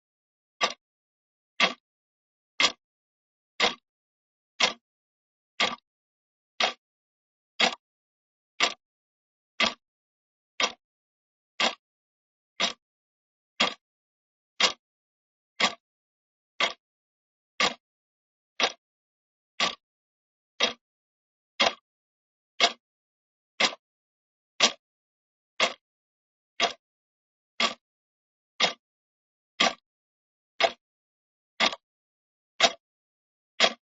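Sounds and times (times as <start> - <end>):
clock ticking: 0.6 - 0.8, 1.6 - 1.8, 2.6 - 2.8, 3.6 - 3.8, 4.6 - 4.8, 5.6 - 5.8, 6.6 - 6.8, 7.6 - 7.8, 8.6 - 8.8, 9.6 - 9.8, 10.6 - 10.8, 11.6 - 11.8, 12.6 - 12.8, 13.6 - 13.8, 14.6 - 14.8, 15.6 - 15.8, 16.6 - 16.8, 17.6 - 17.8, 18.6 - 18.8, 19.6 - 19.8, 20.6 - 20.8, 21.6 - 21.8, 22.6 - 22.8, 23.6 - 23.8, 24.6 - 24.8, 25.6 - 25.8, 26.6 - 26.8, 27.6 - 27.8, 28.6 - 28.8, 29.6 - 29.8, 30.6 - 30.8, 31.6 - 31.8, 32.6 - 32.8, 33.6 - 33.8.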